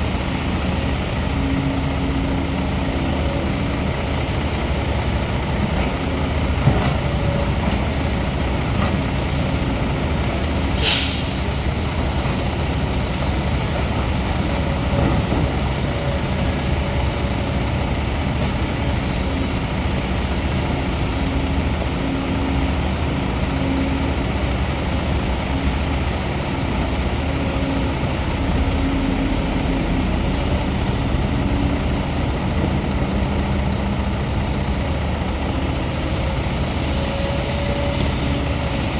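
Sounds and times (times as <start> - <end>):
diesel engine running: 0.0 - 38.9
sharp hiss of air: 10.7 - 11.6.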